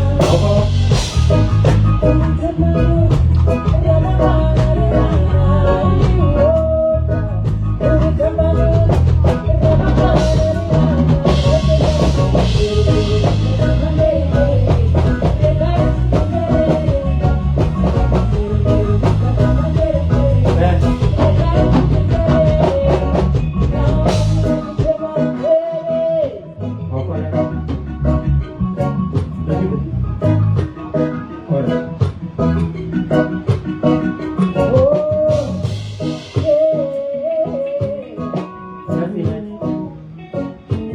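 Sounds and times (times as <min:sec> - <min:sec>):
drum kit hits: 0:00.0 - 0:02.3, 0:09.0 - 0:25.0
heavy bass line: 0:00.0 - 0:25.2, 0:26.5 - 0:36.5.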